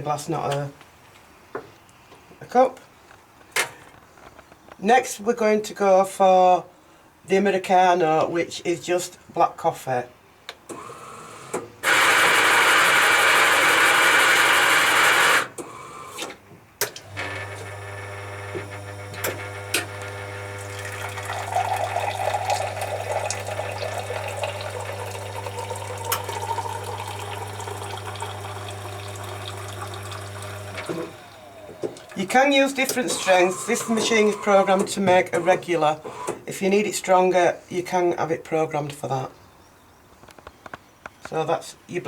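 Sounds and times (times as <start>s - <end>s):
espresso machine pump humming: 11.8s - 15.4s, 17.0s - 36.4s
coffee grinder running: 11.8s - 15.5s, 17.0s - 34.8s
coffee running into glass: 20.0s - 34.6s.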